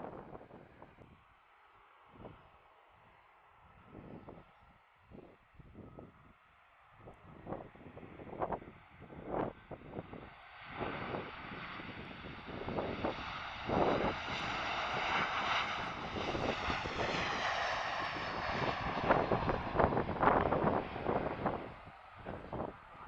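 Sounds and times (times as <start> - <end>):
wind buffeting microphone: 7.1 - 23.0
jet airliner passing: 7.4 - 23.0.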